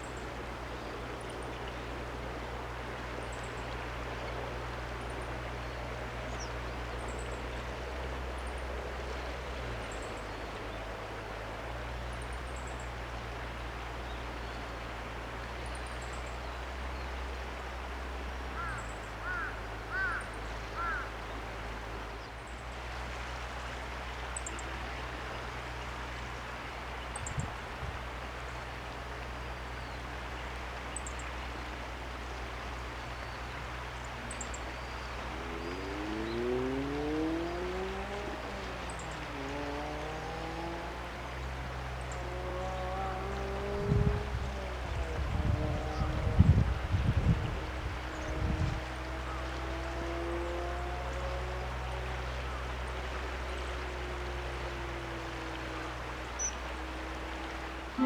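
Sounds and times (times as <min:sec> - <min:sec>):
loud bird calls: 0:18.6 - 0:21.1.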